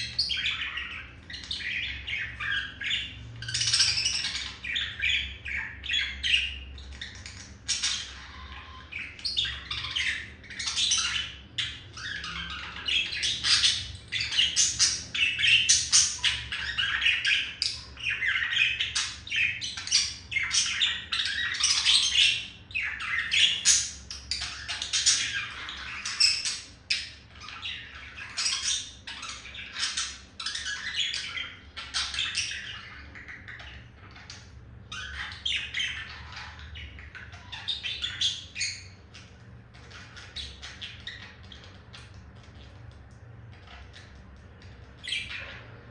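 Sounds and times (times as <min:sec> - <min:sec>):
budgerigar chirping and squawking: 0:00.0 - 0:45.9.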